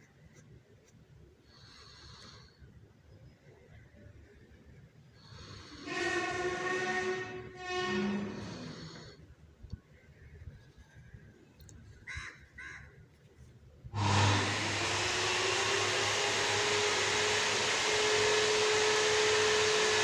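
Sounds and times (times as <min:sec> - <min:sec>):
electric blower running: 0:14.0 - 0:20.0.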